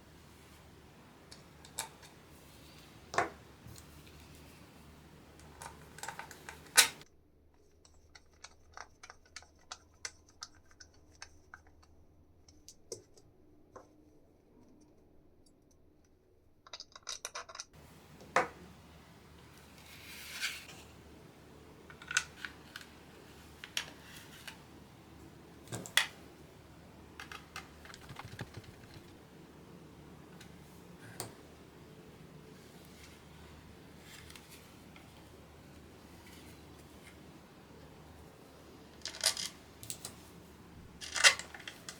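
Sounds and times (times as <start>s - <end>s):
background hiss: 0.0s - 7.1s, 17.8s - 41.9s
keyboard parts clicking: 27.2s - 29.2s.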